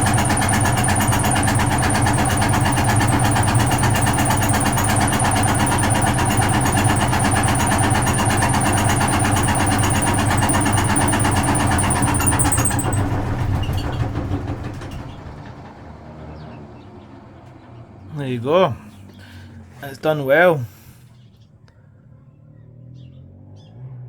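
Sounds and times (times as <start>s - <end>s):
thin high whine: 0.0s - 13.3s
washing machine motor hum: 0.0s - 15.7s.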